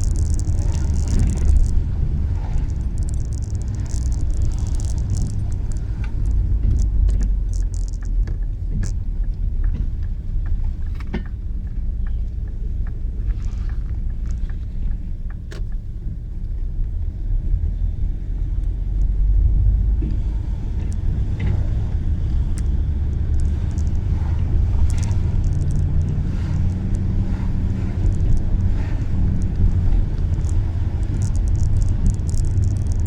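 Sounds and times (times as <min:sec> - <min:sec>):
light ticks: 0:00.0 - 0:17.3, 0:18.3 - 0:33.0
vehicle engine rumbling: 0:00.0 - 0:33.0.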